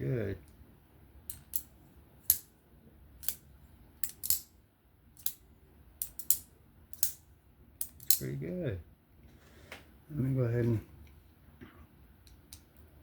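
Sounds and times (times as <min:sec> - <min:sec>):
folding knife clicking and snapping: 0:03.2 - 0:03.4, 0:04.0 - 0:04.5, 0:05.2 - 0:05.4, 0:06.0 - 0:07.2, 0:07.8 - 0:08.2.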